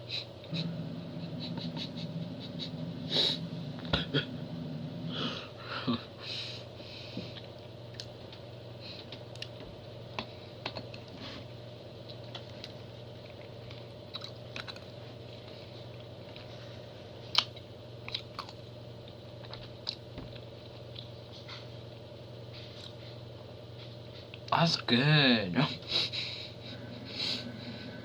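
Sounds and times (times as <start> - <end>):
steady low hum: 0.0 - 28.0
chewing food mouth noises: 12.0 - 16.5, 17.3 - 21.2.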